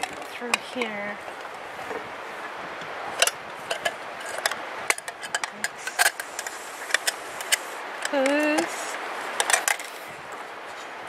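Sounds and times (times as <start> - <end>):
metal hardware clinking: 3.2 - 8.6.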